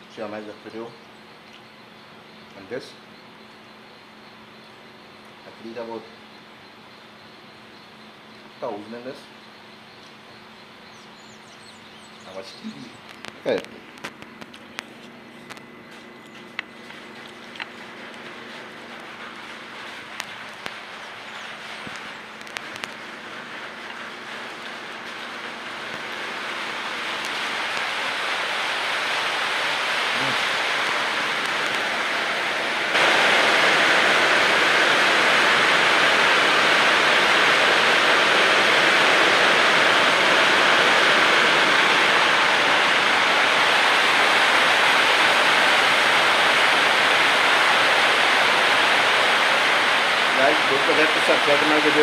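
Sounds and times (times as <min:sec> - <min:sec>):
heavy rain falling: 0:16.9 - 0:52.0.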